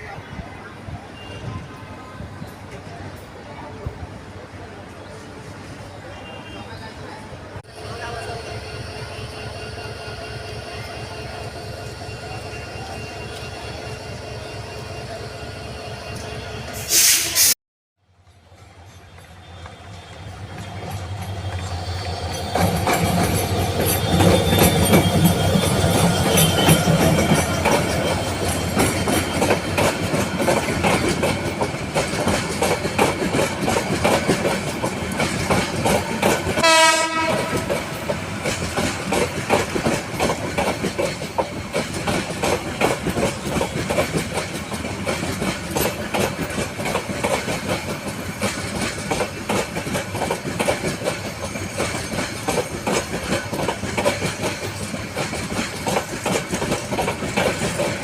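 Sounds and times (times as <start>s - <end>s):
train rumbling on track: 0.0s - 58.0s
train horn blast: 36.6s - 38.0s.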